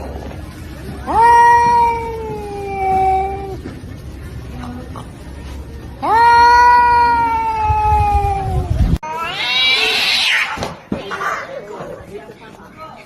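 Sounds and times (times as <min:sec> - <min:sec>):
cat yowling meow: 0:01.1 - 0:03.6, 0:06.0 - 0:10.6.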